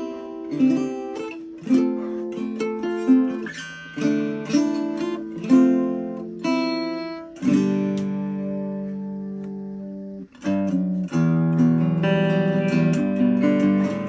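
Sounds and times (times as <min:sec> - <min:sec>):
acoustic guitar strummed: 0:00.0 - 0:14.0.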